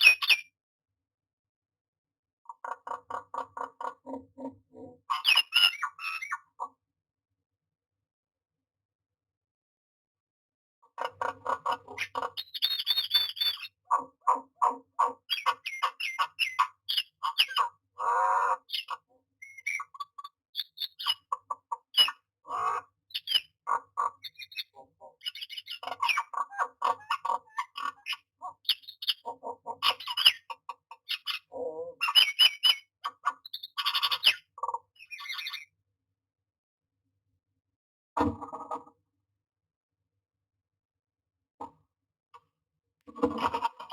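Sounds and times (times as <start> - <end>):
myna squawking and whistling: 5.1 - 6.4, 12.0 - 21.4, 22.0 - 35.6.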